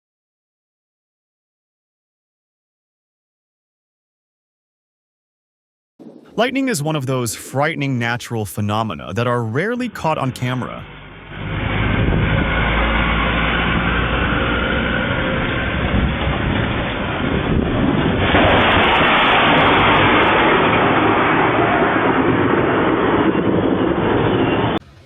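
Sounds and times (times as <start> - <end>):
low thunder rumble: 6.0 - 8.1, 9.8 - 24.8
steady rushing hiss: 6.0 - 11.6.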